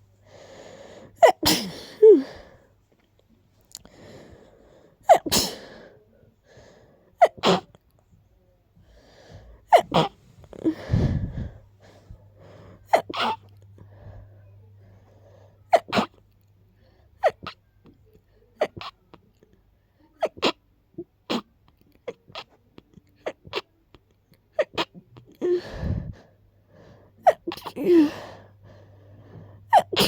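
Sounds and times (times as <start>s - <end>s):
person sneezing: 1.2s - 2.4s, 5.1s - 5.8s, 9.7s - 11.0s, 12.9s - 13.5s, 27.2s - 28.4s, 29.7s - 30.0s.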